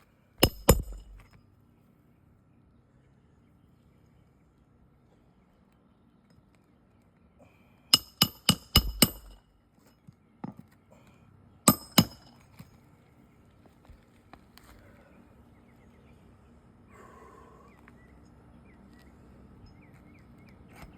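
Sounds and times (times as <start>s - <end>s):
hammer striking nails: 0.4s - 1.3s, 8.0s - 9.4s, 11.7s - 12.3s.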